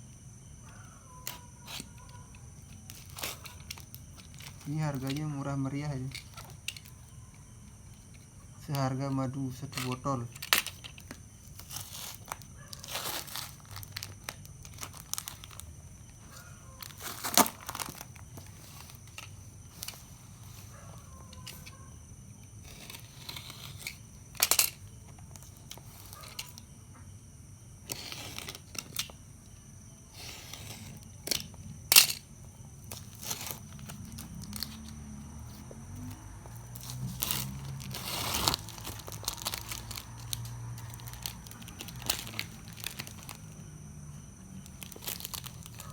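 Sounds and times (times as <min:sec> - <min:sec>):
plastic packaging crinkling: 0:01.3 - 0:07.1, 0:08.6 - 0:21.7, 0:30.8 - 0:43.7, 0:44.5 - 0:45.9.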